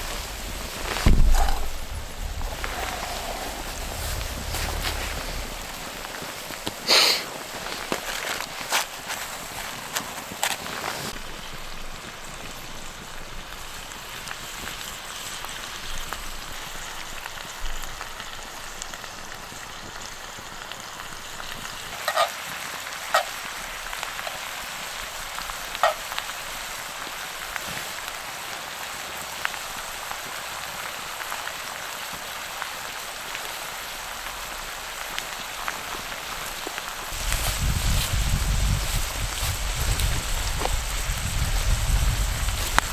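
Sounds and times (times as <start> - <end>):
food sizzling in a pan: 11.0 - 42.9.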